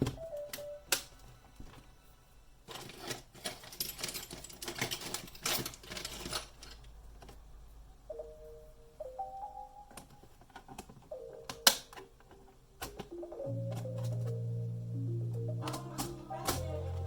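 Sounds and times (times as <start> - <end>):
laptop parts clicking and clattering: 2.7 - 7.6, 9.9 - 14.4.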